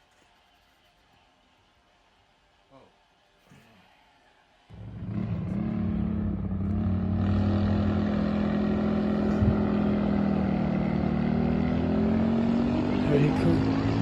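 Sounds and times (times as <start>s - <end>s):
minibike engine running: 4.7s - 14.0s.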